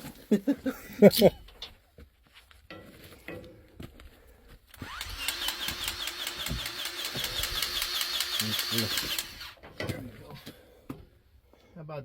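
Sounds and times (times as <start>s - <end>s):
motor running with clatter: 4.8s - 9.6s.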